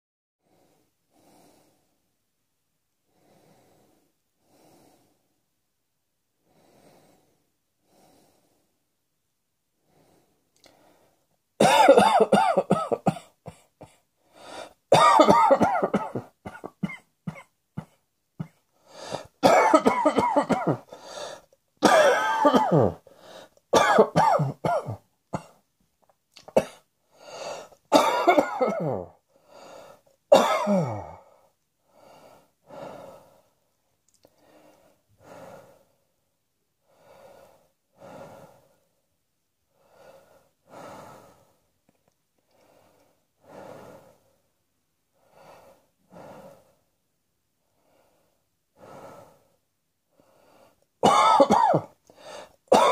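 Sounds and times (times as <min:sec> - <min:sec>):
person coughing: 0:11.6 - 0:14.0, 0:14.9 - 0:20.9, 0:21.8 - 0:23.0, 0:23.8 - 0:25.6, 0:26.5 - 0:26.8, 0:27.9 - 0:29.2, 0:30.3 - 0:31.2, 0:51.0 - 0:52.0, 0:52.7 - 0:52.9.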